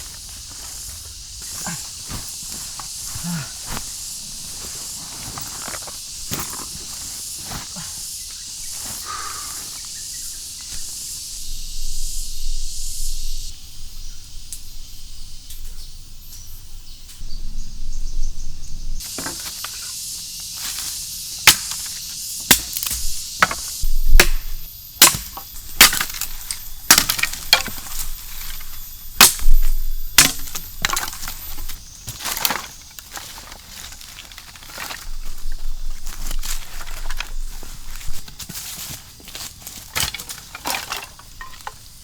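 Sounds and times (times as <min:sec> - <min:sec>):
steady high hiss: 0:00.0 - 0:42.0
sharp knocks and cracks: 0:21.4 - 0:35.1, 0:39.3 - 0:41.8.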